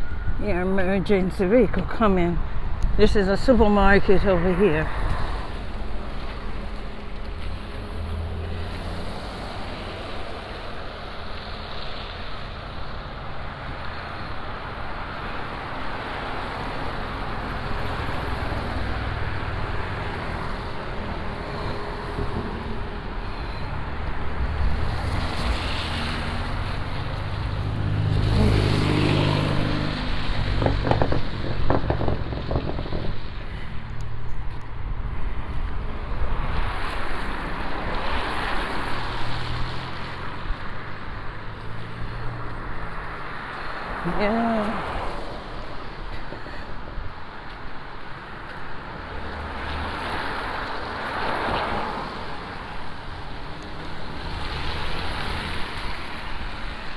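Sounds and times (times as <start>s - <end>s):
loud vehicle passing: 3.4s - 46.6s, 48.6s - 56.9s
tyres hissing on snowy road: 35.2s - 44.0s.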